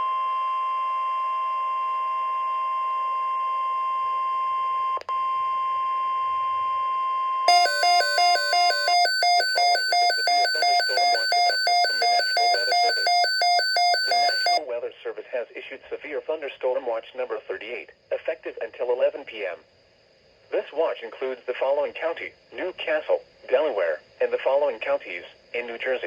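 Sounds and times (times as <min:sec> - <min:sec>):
high warning alarm tone: 0:07.5 - 0:14.6
warbling two-tone electronic alert: 0:07.5 - 0:14.6.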